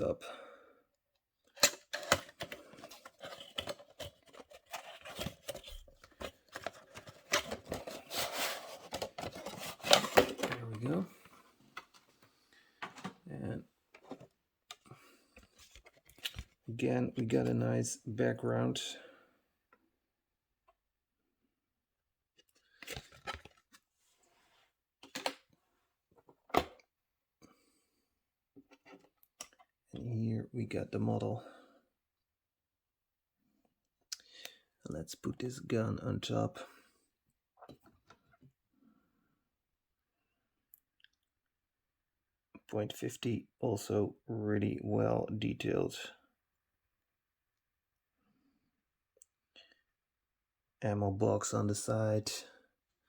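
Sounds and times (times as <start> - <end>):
packaging clicks and scrapes: 1.6 - 12.1.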